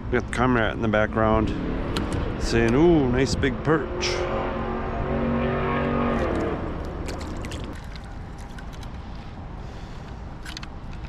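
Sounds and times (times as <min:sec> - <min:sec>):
low rumble: 0:01.1 - 0:09.4.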